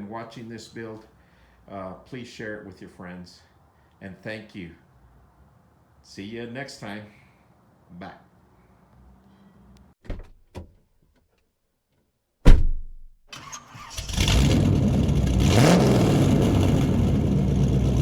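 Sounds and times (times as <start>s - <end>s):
sharp loud thump: 12.4s - 13.2s
engine starting and running: 13.3s - 18.0s.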